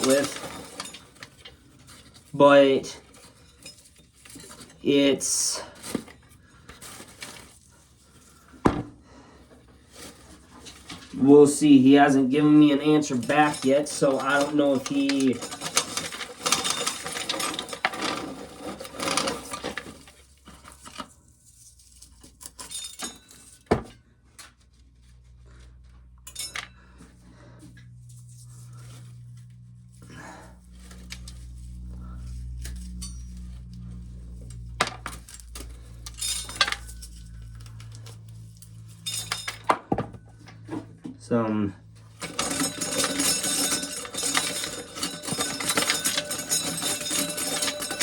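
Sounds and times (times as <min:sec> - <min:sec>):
corn sheller clattering: 0:00.0 - 0:06.1, 0:10.0 - 0:21.0, 0:42.1 - 0:48.0
low steady hum: 0:24.4 - 0:48.0.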